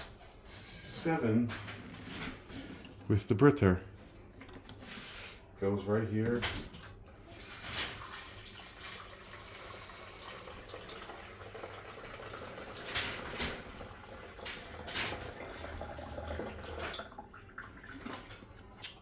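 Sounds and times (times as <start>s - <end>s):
water pouring into reservoir: 7.3s - 18.6s.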